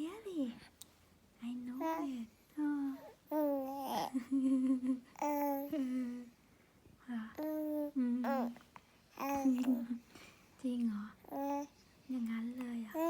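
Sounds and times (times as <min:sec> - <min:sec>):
baby cooing: 0:03.3 - 0:04.2, 0:05.2 - 0:05.7, 0:09.2 - 0:09.9.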